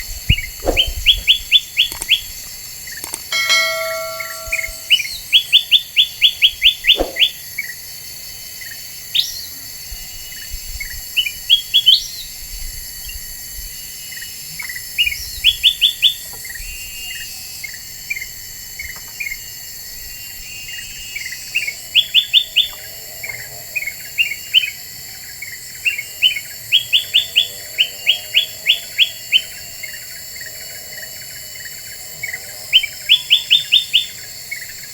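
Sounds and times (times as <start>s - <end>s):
bulbul chirping song: 3.0s - 7.4s.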